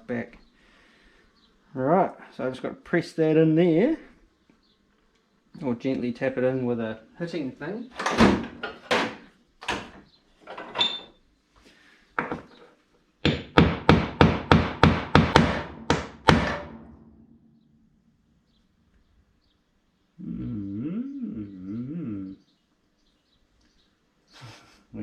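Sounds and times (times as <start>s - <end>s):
hammer tapping: 13.2s - 16.9s.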